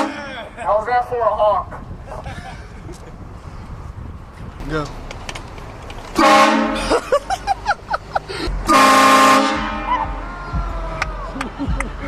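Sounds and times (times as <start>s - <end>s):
loud vehicle air horn blasts: 0.0s - 0.4s, 6.2s - 7.0s, 8.6s - 10.3s.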